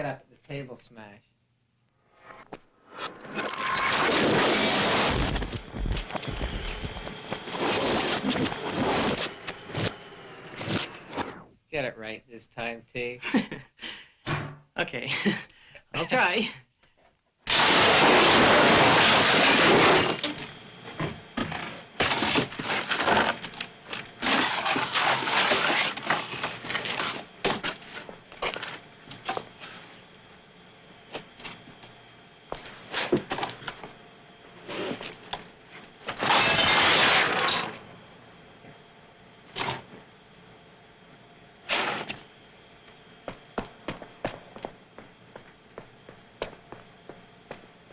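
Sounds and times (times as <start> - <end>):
table smash crash: 17.5 - 20.4, 36.2 - 37.7.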